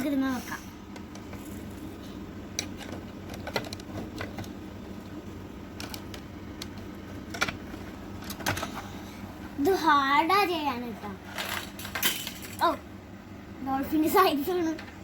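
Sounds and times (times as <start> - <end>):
plastic toy parts clicking: 5.8 - 7.6.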